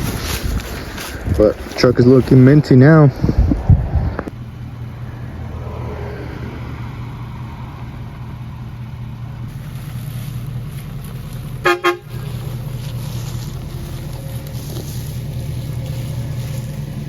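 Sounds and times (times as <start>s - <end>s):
diesel truck engine idling: 0.0s - 17.0s
air train horn toot: 11.6s - 12.3s.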